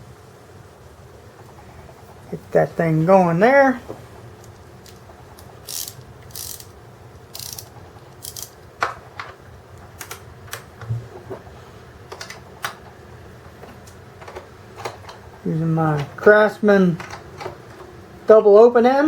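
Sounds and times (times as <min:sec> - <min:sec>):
wrench clicking on nut: 0:05.6 - 0:06.7, 0:07.3 - 0:08.6.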